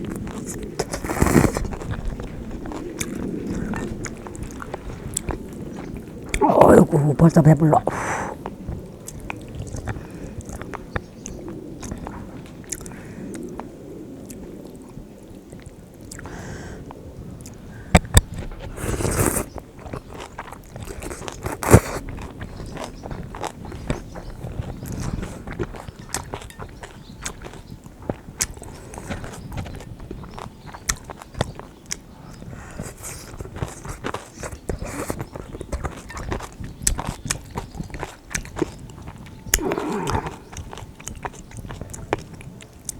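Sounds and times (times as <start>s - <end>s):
chewing noodles: 0.0s - 42.9s
wet mouth clicks and smacks: 32.8s - 42.9s.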